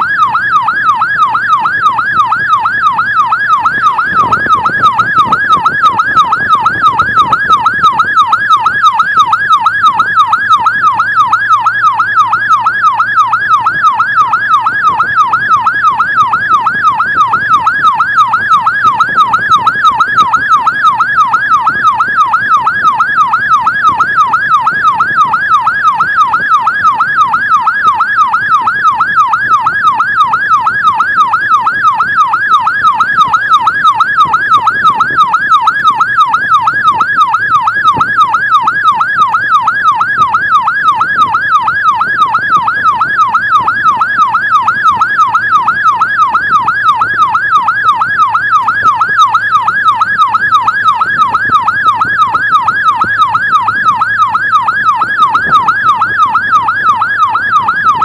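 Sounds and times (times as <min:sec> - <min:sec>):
emergency siren yelping: 0:00.0 - 0:58.0.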